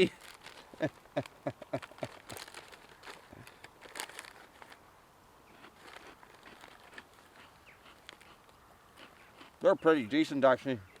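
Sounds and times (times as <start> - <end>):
plastic packet crinkling: 0.0 - 4.8, 5.8 - 8.4.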